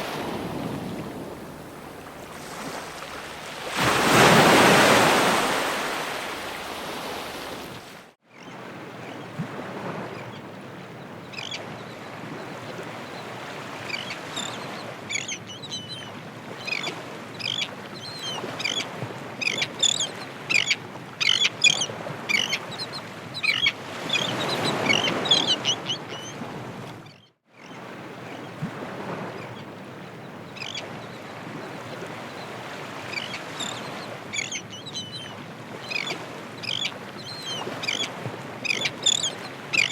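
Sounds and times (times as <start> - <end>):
ocean surf: 0.0 - 10.6, 16.2 - 27.0, 27.8 - 39.9
bird calls chattering: 35.9 - 39.9.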